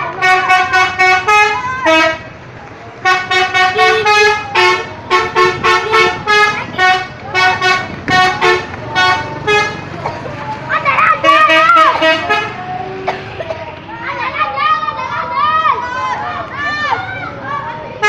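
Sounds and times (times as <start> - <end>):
bus air horn playing a tune: 0.1 - 2.3, 3.0 - 10.1, 11.2 - 13.4.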